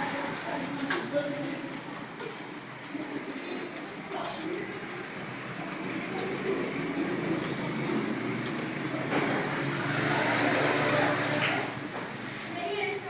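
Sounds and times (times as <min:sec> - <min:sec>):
keyboard typing: 0:00.0 - 0:08.7.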